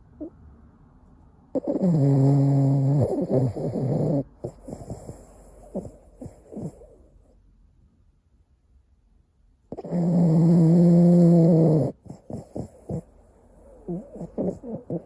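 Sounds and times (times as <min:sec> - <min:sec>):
dog snoring: 0:01.5 - 0:07.4, 0:09.7 - 0:15.0
dog snuffling breaths: 0:01.6 - 0:07.3, 0:09.7 - 0:15.0.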